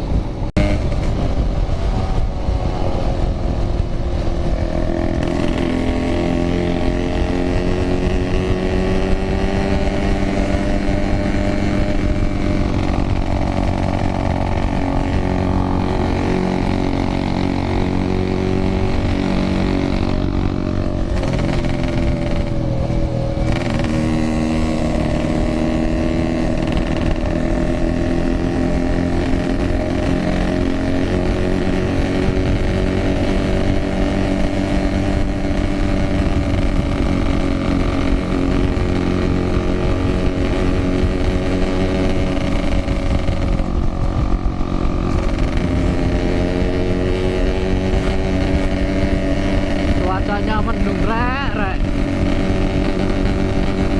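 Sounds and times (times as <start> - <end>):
constant low rumble: 0.0 - 53.9
motorcycle engine revving: 0.0 - 53.9.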